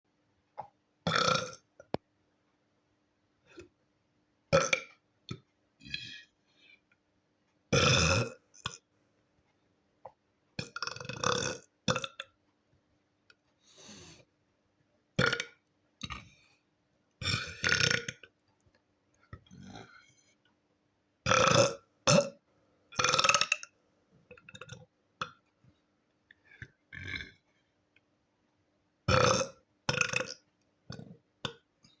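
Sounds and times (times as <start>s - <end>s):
boy burping: 1.0s - 1.7s, 4.5s - 4.9s, 7.7s - 8.8s, 10.6s - 12.2s, 17.2s - 18.3s, 21.3s - 22.4s, 23.0s - 23.7s, 29.1s - 31.1s.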